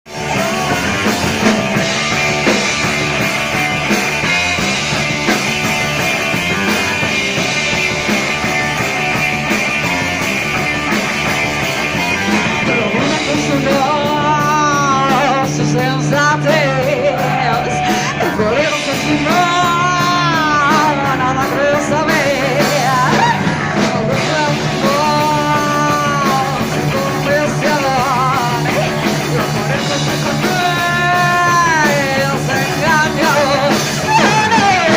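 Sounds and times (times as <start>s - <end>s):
live rock band playing: 0.0s - 34.9s
person singing: 0.1s - 3.5s, 12.2s - 34.9s.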